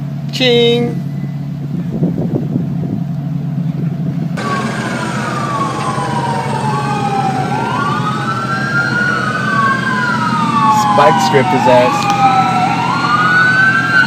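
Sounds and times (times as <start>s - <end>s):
steady low hum: 0.0s - 14.0s
police sirens wailing: 4.4s - 14.0s.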